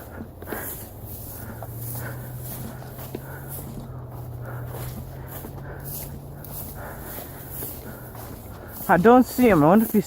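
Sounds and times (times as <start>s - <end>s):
footsteps in snow: 0.0s - 10.0s
heavy breathing: 0.0s - 10.0s.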